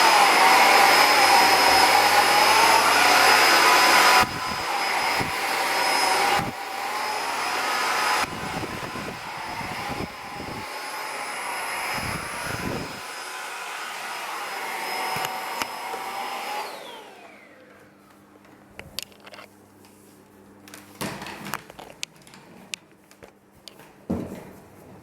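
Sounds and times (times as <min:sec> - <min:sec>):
vacuum cleaner motor whining: 0:00.0 - 0:19.1.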